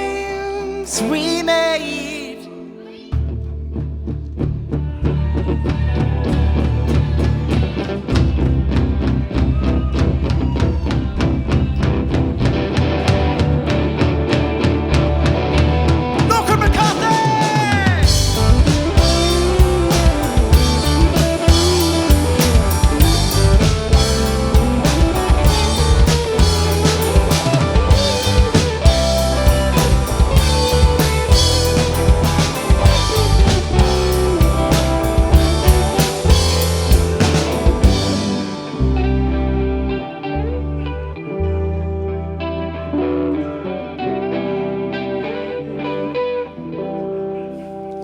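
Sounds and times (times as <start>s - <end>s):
rock band playing: 4.7s - 47.7s
drum kit: 5.2s - 39.2s.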